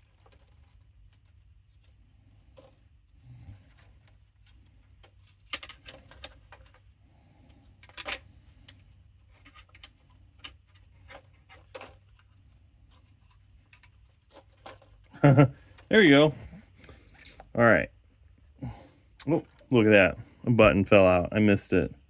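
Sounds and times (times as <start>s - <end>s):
faint low hum: 0.0s - 22.0s
plastic and metal parts clicking: 3.6s - 6.9s, 7.6s - 15.1s.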